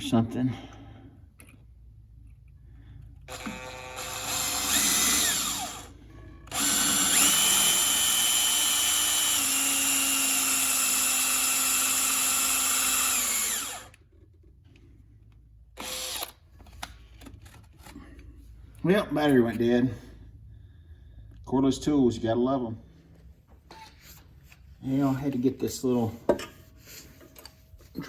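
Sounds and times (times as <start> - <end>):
cordless drill drilling into metal: 3.3 - 14.0, 15.8 - 16.4.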